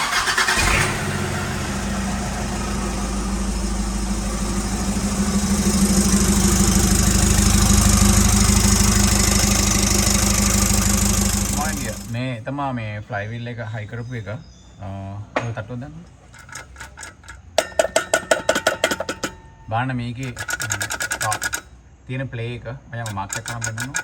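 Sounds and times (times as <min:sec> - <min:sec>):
pickup engine idling: 0:00.0 - 0:12.2.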